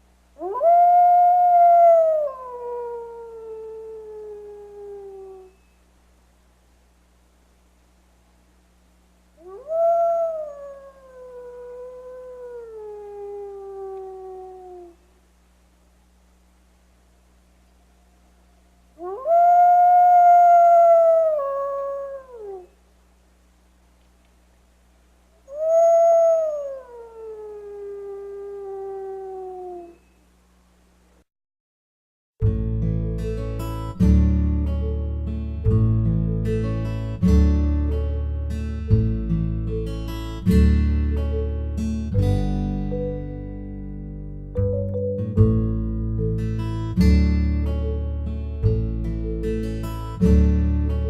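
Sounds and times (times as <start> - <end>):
faint low hum: 0.0 - 31.3, 32.4 - 51.0
wolf howling: 0.4 - 5.6, 9.4 - 15.0, 17.8 - 22.7, 25.4 - 30.0.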